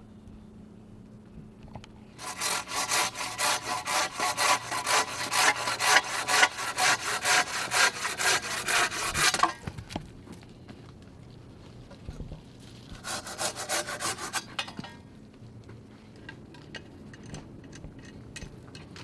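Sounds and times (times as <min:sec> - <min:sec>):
hand saw cutting through log: 0:02.2 - 0:09.7, 0:13.0 - 0:14.6.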